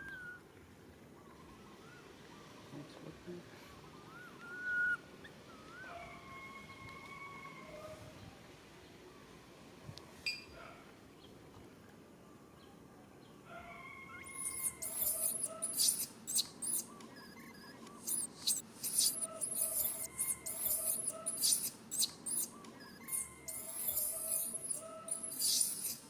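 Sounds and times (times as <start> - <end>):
baby monkey squealing: 14.2 - 26.0.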